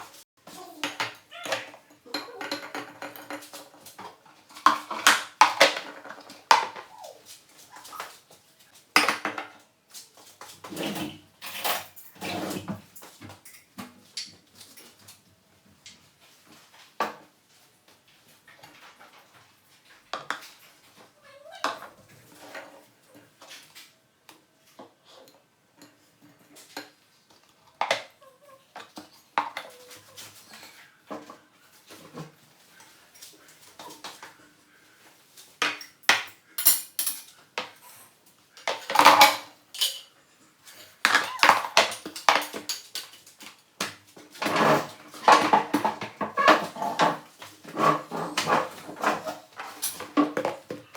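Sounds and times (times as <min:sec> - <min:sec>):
cutlery clinking on plates: 0:35.6 - 0:43.6.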